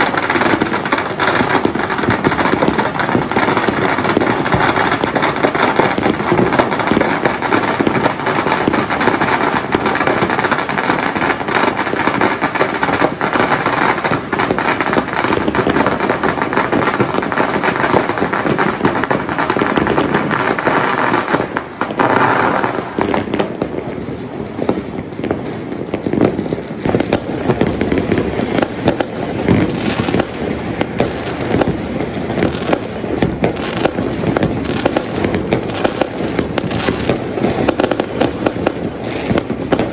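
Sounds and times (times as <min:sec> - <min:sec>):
firecrackers crackling bangs: 0:00.0 - 0:39.9.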